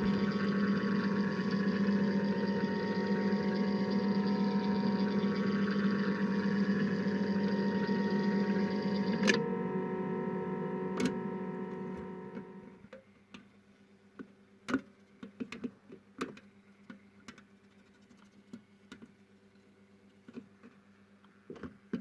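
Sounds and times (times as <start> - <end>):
washing machine motor hum: 0.0 - 12.8.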